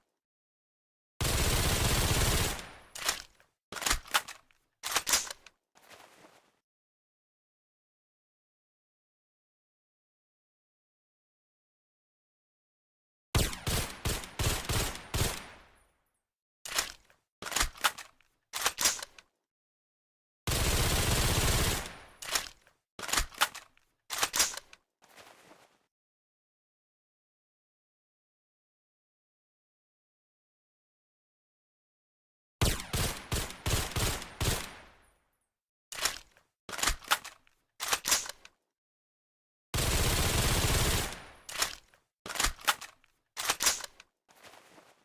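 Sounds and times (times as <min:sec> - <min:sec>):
rifle clicks: 0:03.0 - 0:05.5, 0:16.7 - 0:19.3, 0:22.2 - 0:24.8, 0:36.0 - 0:38.6, 0:41.1 - 0:44.1.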